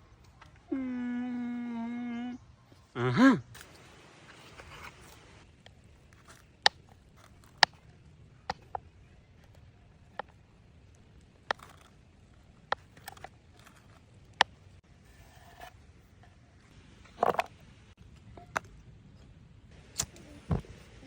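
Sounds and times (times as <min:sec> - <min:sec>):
low background noise: 0:00.0 - 0:21.0.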